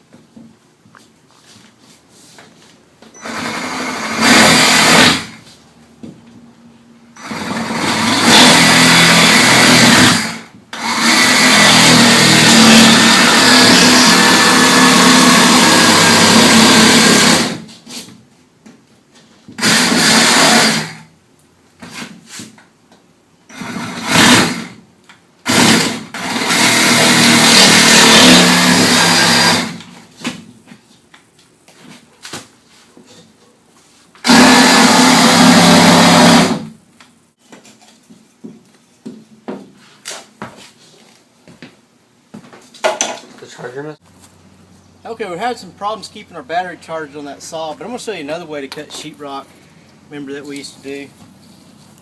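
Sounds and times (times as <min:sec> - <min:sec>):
power saw cutting sheetrock: 0:03.2 - 0:05.4, 0:07.2 - 0:17.7, 0:19.6 - 0:21.0, 0:23.5 - 0:24.8, 0:25.5 - 0:29.9, 0:34.2 - 0:36.7.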